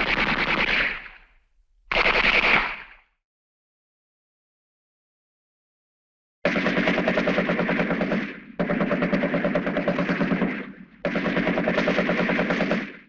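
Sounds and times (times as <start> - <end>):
machine-gun fire: 0.0 - 1.3, 1.9 - 3.0, 6.4 - 13.0.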